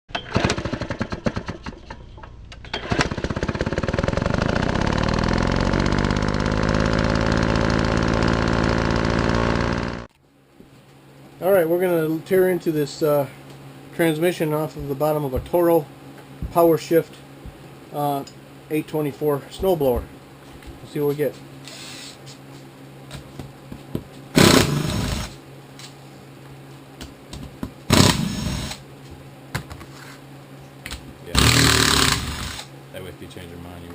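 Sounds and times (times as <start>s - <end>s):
power tool bursts: 0.1s - 1.6s, 2.7s - 10.1s, 24.4s - 25.4s, 27.9s - 28.8s, 31.3s - 32.7s
motor running and knocking: 2.8s - 10.1s, 23.9s - 25.4s, 27.4s - 28.8s, 31.4s - 32.7s.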